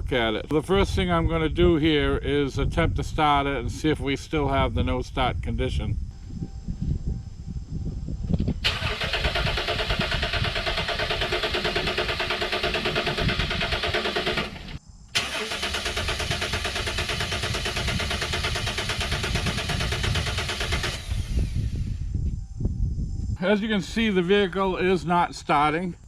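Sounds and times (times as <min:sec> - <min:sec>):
starter cranking engine: 0:08.6 - 0:21.9.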